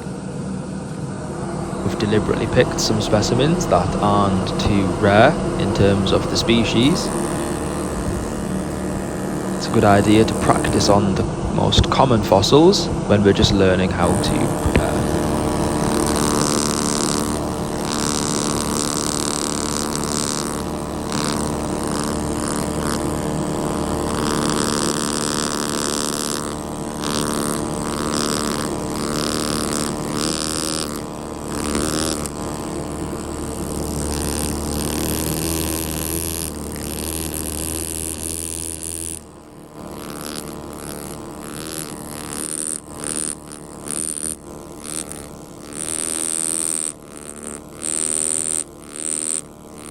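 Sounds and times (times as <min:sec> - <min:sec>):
low hum: 0:00.0 - 0:30.2
pneumatic air tool chipping stone: 0:01.9 - 0:49.9.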